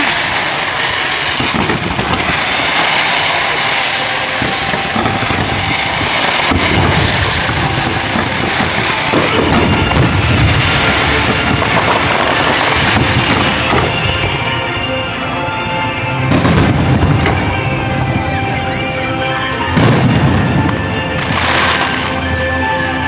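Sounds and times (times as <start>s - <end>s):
fireworks crackling: 0.0s - 23.0s
heavy low firework booms: 1.3s - 14.5s, 16.3s - 18.3s, 19.8s - 21.9s.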